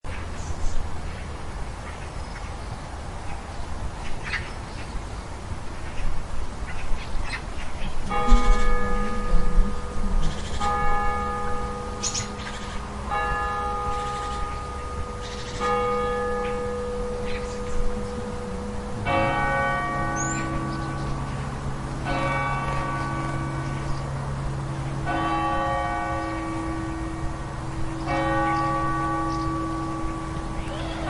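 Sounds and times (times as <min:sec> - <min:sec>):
outdoor ambience: 0:00.0 - 0:31.0
bird calls: 0:05.8 - 0:10.8, 0:11.6 - 0:12.9, 0:17.2 - 0:18.5
church bell striking: 0:08.0 - 0:31.0.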